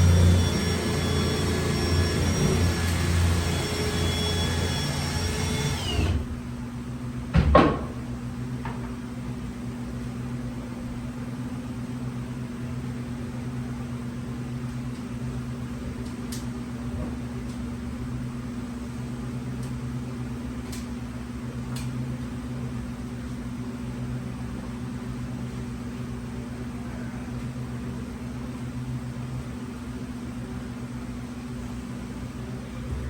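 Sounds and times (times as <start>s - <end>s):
loud machine running: 0.0s - 6.4s, 32.6s - 33.0s
loud knock: 7.4s - 8.0s.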